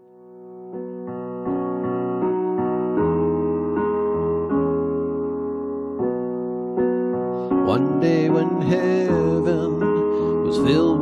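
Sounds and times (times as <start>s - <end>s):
piano playing slow chords: 0.0s - 11.0s
person singing: 7.6s - 11.0s.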